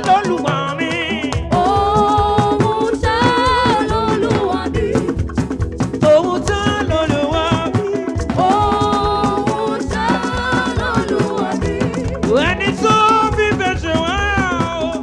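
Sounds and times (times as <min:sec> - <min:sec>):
gospel drums and percussion: 0:00.0 - 0:15.0.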